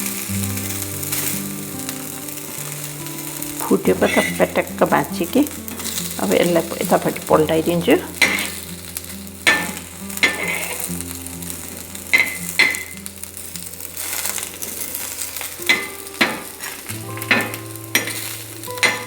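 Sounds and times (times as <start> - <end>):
pancake sizzling in oil: 0.0 - 19.0
spatula scraping and tapping griddle: 3.9 - 4.6, 5.5 - 6.7, 8.2 - 10.9, 11.5 - 19.0.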